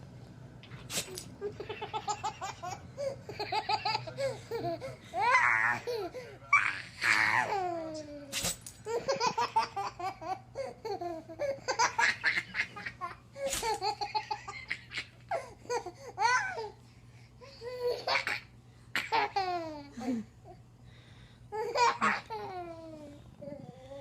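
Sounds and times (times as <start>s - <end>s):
baby laughing: 1.4s - 8.2s, 21.6s - 22.9s.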